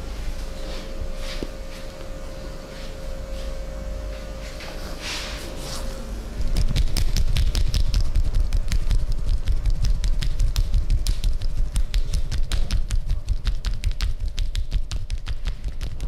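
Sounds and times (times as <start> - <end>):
hands tapping and slapping body: 6.5 - 16.0.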